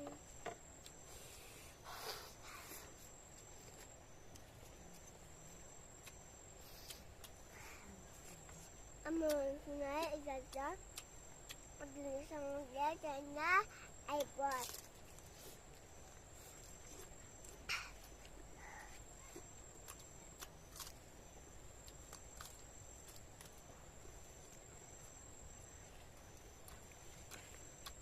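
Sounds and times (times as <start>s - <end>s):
insect chirping: 0.0s - 28.0s
insects whining: 0.0s - 28.0s
chewing clicks: 10.4s - 11.7s, 26.3s - 28.0s.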